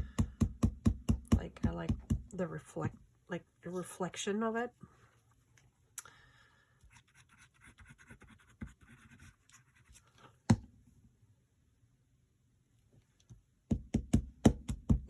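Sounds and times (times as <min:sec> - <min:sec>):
tool scratching paper: 0:07.0 - 0:09.9.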